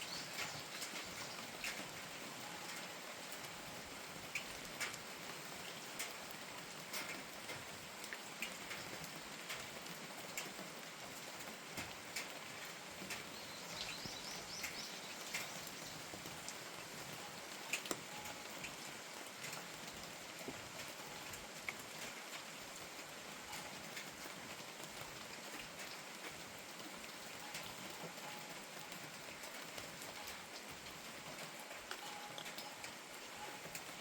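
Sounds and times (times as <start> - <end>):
steady rain: 0.0 - 34.0
bird chirping: 13.3 - 16.0.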